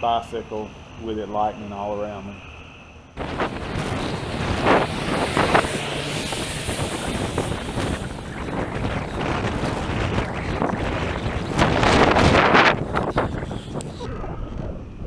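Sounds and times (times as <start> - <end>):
wind buffeting microphone: 3.2 - 15.0.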